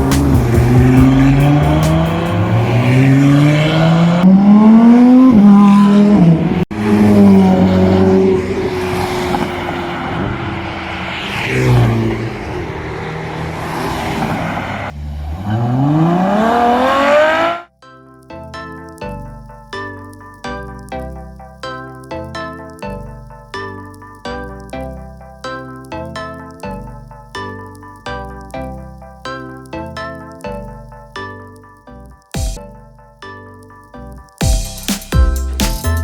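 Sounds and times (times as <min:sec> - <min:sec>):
motorcycle engine revving: 0:00.0 - 0:17.7.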